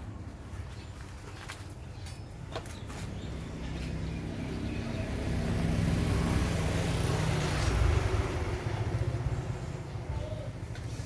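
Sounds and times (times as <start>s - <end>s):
vehicle engine passing: 3.1s - 10.1s.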